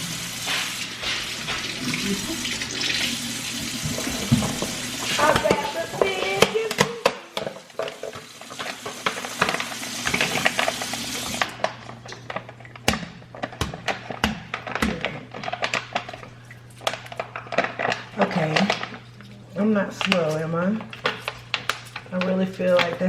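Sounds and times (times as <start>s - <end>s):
kitchen tap running: 0.0s - 14.9s
dishes and packaging clattering: 0.0s - 23.0s.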